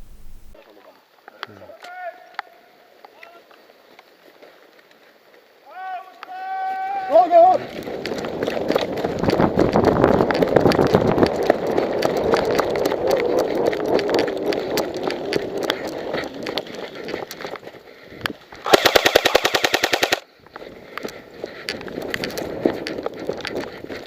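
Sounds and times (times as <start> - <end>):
rustling movement noise: 0.0 - 0.6
scattered clicks: 18.2 - 24.0
airsoft rifle full-auto burst: 18.6 - 20.2.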